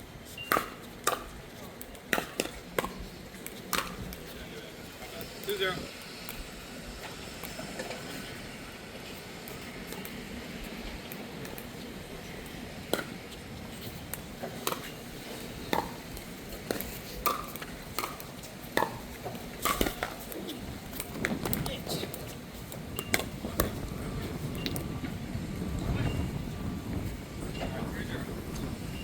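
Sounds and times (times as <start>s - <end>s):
paddles hitting plastic ball: 0.4s - 4.4s, 13.8s - 23.8s.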